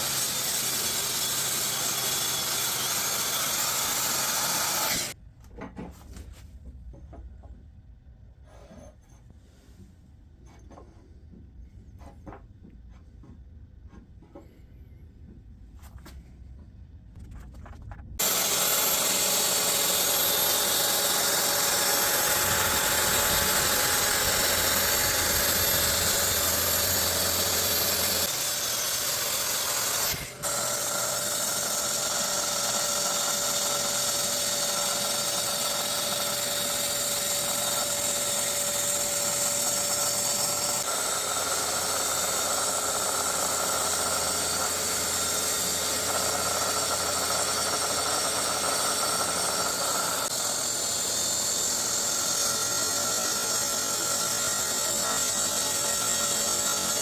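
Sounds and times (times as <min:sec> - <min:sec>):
woodworking power tool running: 0:00.0 - 0:05.2, 0:18.2 - 0:57.0.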